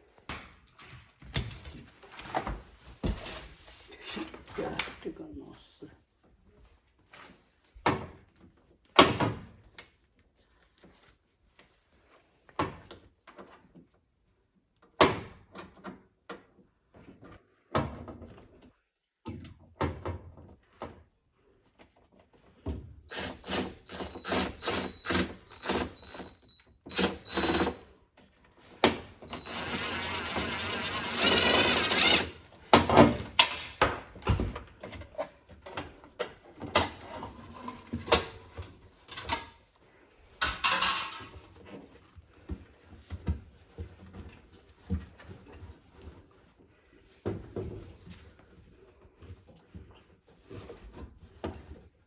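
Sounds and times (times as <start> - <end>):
tools knocking and clicking: 40.4 - 41.3.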